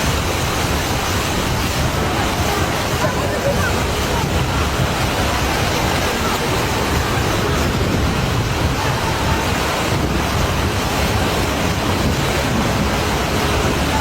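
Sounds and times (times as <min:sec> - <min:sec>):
floodwater rushing: 0:00.0 - 0:14.0
wind buffeting microphone: 0:00.0 - 0:14.0.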